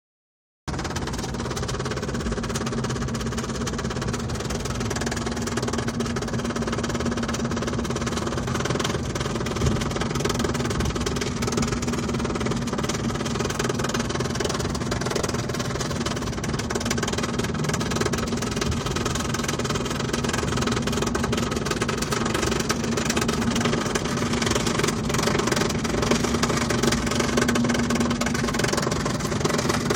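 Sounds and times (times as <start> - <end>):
car interior engine and road noise: 0.7 - 29.9
strange noise behind dashboard: 0.7 - 29.9.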